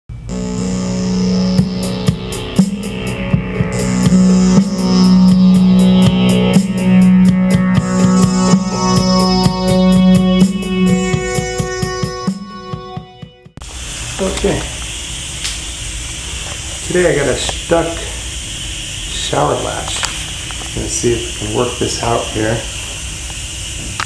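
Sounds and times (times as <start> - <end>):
guitar: 0.3 - 13.4
keyboard: 0.3 - 13.6
steady drum beat: 1.1 - 13.6.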